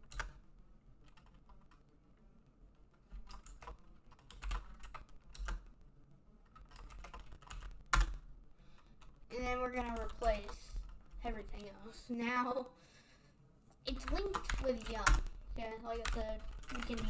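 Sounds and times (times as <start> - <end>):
typing on a keyboard: 0.0 - 0.4, 1.0 - 1.9, 2.9 - 5.7, 6.5 - 9.2, 9.8 - 11.7, 13.9 - 17.0.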